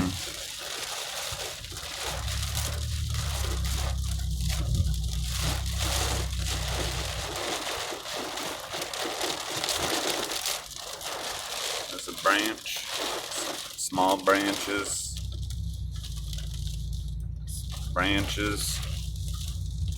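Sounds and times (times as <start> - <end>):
heavy rain on car roof: 0.0 - 19.9
low steady drone: 1.7 - 7.9, 14.2 - 19.9.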